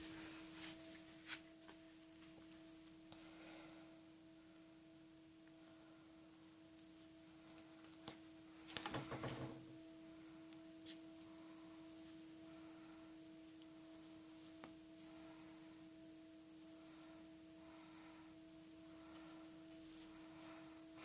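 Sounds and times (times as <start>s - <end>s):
rustling: 0.0s - 3.0s
faint steady whine: 0.0s - 21.0s.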